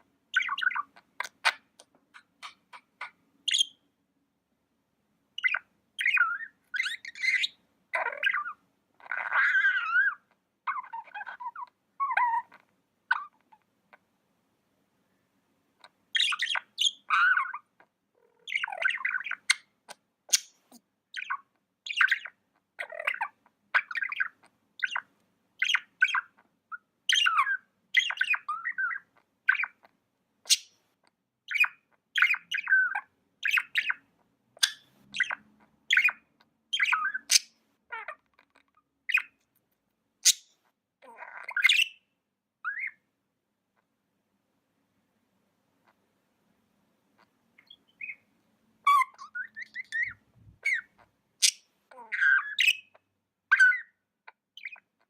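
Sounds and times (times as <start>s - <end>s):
budgies chirping and squawking: 0.3s - 3.8s, 5.4s - 13.6s, 15.8s - 26.4s, 27.1s - 29.9s, 30.5s - 30.8s, 31.5s - 39.4s, 40.2s - 42.0s, 42.7s - 43.0s, 47.2s - 55.0s.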